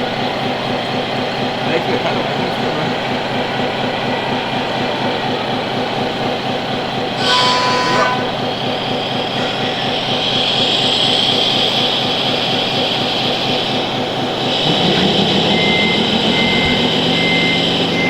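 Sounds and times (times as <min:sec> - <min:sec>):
high motor whine: 0:00.0 - 0:18.0
model trucks rumbling: 0:00.0 - 0:18.0
horn blast: 0:07.1 - 0:08.6, 0:14.5 - 0:18.0.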